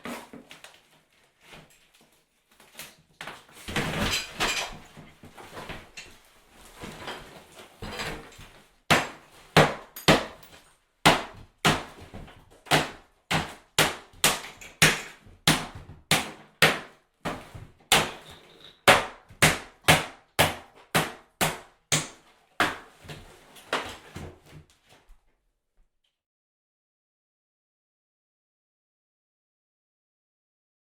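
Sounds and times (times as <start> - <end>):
hammer striking tile and drywall: 2.7 - 6.2, 6.8 - 24.7.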